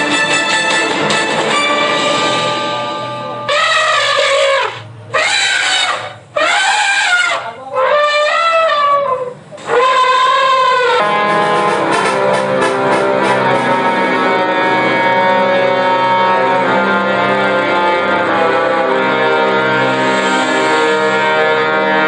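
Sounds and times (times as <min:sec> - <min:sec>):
brass-like lead notes: 0:00.0 - 0:22.0
organ-like keyboard chords: 0:11.0 - 0:22.0.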